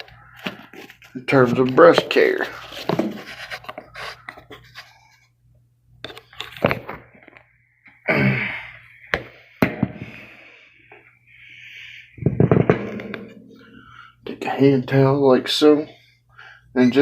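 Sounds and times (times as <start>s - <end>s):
objects knocking and clunking: 12.2s - 14.0s.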